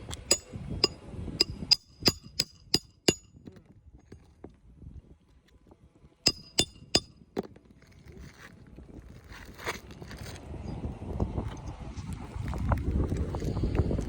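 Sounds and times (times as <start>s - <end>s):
hammer blows with metallic clink: 0.1s - 3.4s, 6.3s - 7.2s.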